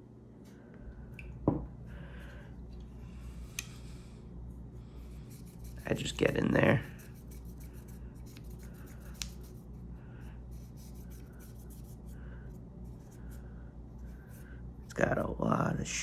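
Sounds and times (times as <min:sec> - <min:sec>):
cotton swab rubbing: 0:05.1 - 0:09.7.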